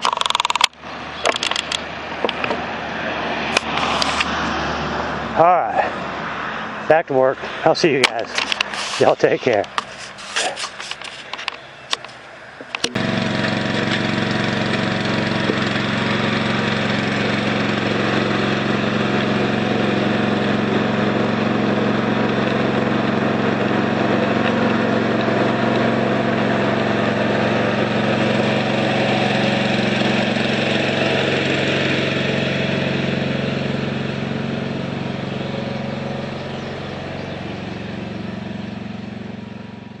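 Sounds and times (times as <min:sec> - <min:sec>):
chainsaw engine running: 0:00.0 - 0:40.0
clicks: 0:09.5 - 0:14.0.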